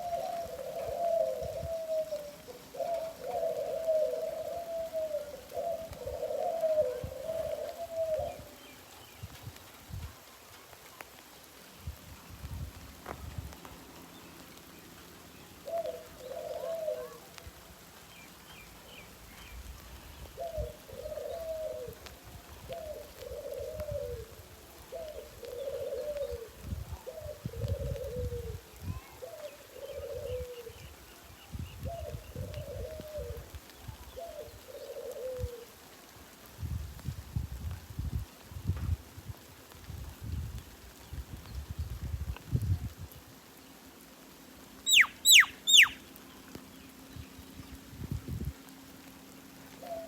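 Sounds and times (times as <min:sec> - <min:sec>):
pigeons cooing: 0:00.0 - 0:08.9, 0:15.6 - 0:18.7, 0:20.3 - 0:31.0, 0:31.8 - 0:36.0, 0:44.9 - 0:46.2, 0:49.0 - 0:50.0
faint bird chirps: 0:44.9 - 0:47.4.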